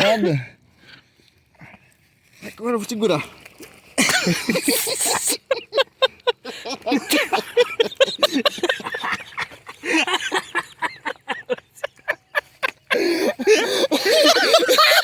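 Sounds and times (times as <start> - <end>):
men laughing: 4.0 - 15.0.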